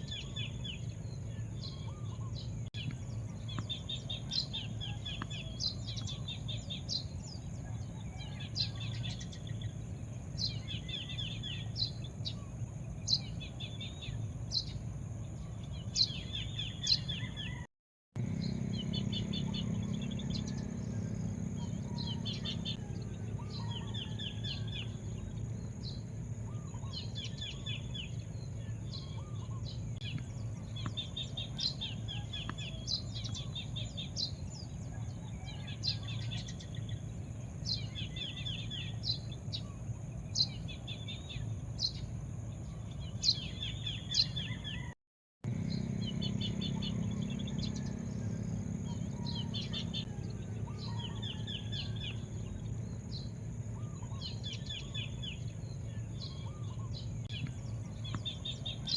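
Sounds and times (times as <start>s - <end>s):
small birds chirping: 0.0s - 58.9s
steady low rumble: 45.5s - 58.9s.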